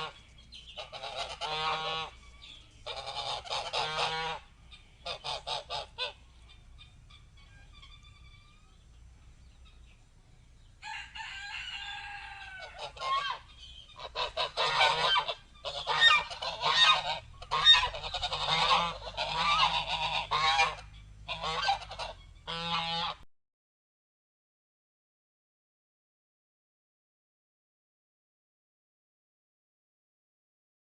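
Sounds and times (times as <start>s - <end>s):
large birds honking: 0.0s - 10.1s, 10.8s - 23.2s.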